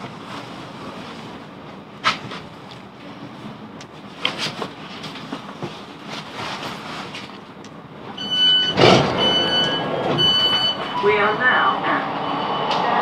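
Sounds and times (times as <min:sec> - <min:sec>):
train rumbling: 0:00.0 - 0:13.0
train door beeps: 0:08.1 - 0:13.0.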